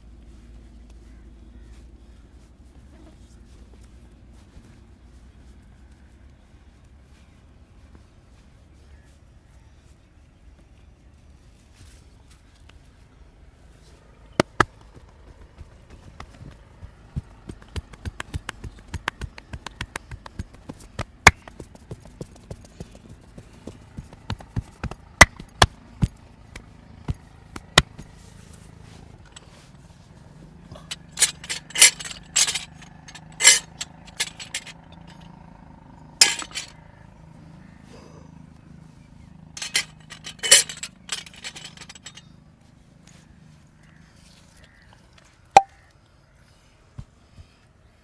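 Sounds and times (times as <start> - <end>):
massage clicks and cracks: 14.4 - 23.0, 23.8 - 28.6.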